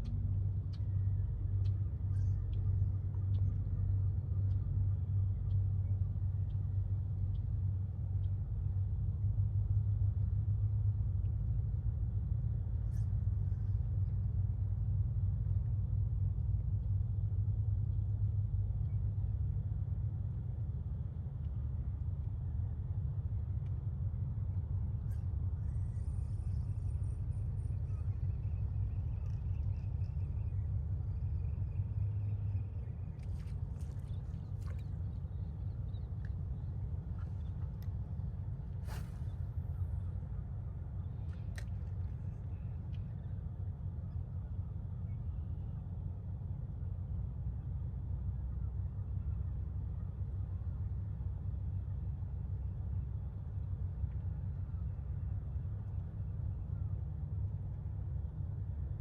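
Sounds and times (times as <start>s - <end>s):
steady low rumble: 0.0s - 59.0s.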